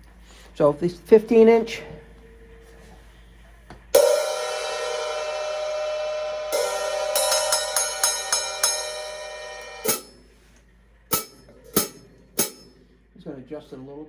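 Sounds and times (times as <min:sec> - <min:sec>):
open hi-hats ringing: 0:04.0 - 0:12.9.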